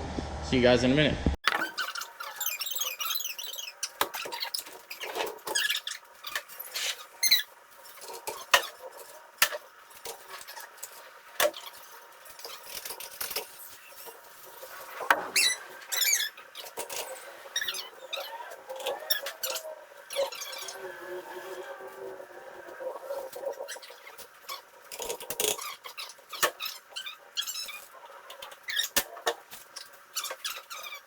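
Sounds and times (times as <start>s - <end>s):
short high squeaks: 15.1s - 20.8s.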